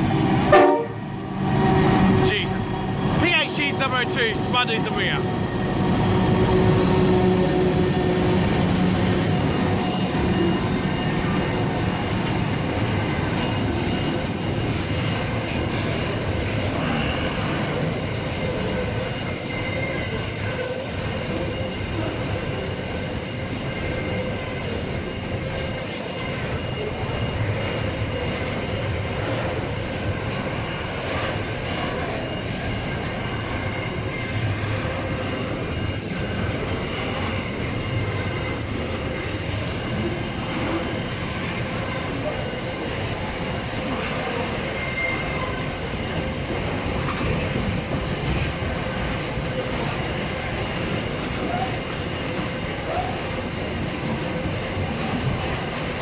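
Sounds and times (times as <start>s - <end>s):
train wheels rumbling: 0.0s - 56.0s
faint high wheel squeal: 44.0s - 45.8s.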